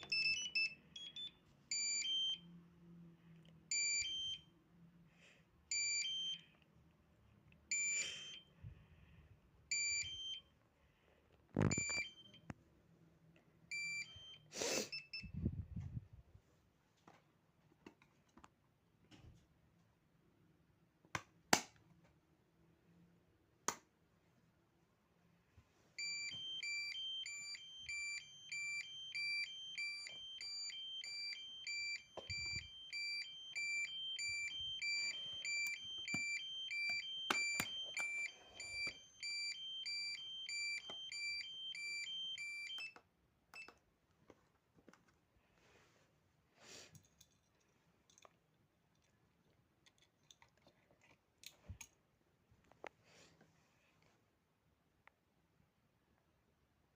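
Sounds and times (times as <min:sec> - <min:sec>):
fire alarm two-pitch beeping: 0:00.0 - 0:02.5, 0:03.7 - 0:04.5, 0:05.7 - 0:06.5, 0:07.7 - 0:08.5, 0:09.7 - 0:10.5, 0:13.7 - 0:15.4, 0:26.0 - 0:43.0.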